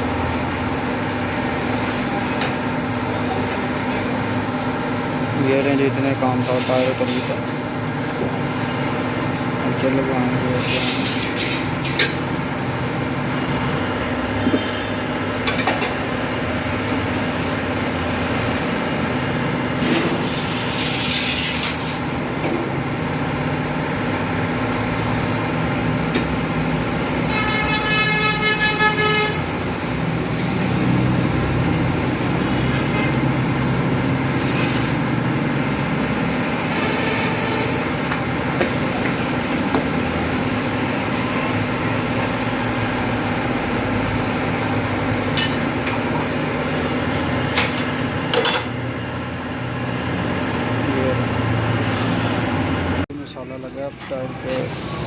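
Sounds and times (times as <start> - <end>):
machinery hum: 0.0 - 55.0
traffic: 0.0 - 55.0
vehicle horn: 14.5 - 15.0, 27.2 - 29.6, 36.7 - 37.9.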